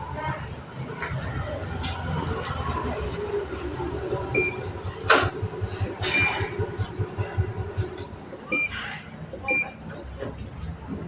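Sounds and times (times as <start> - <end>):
machinery throbbing and humming: 1.2 - 11.0
short electronic beeps: 4.3 - 4.7, 5.8 - 6.5, 8.5 - 8.8, 9.4 - 9.8.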